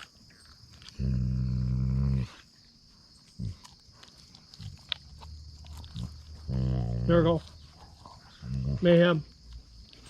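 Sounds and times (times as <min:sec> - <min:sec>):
dog growling low: 0:01.0 - 0:02.4, 0:05.9 - 0:08.9.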